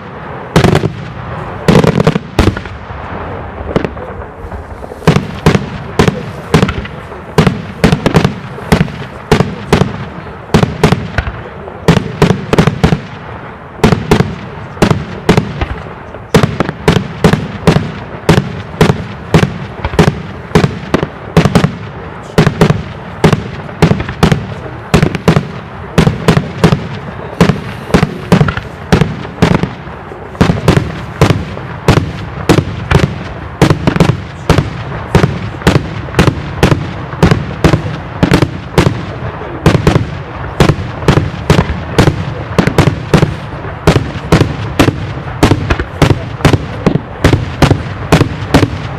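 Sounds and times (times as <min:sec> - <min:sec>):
fireworks bangs: 0:00.0 - 0:48.9.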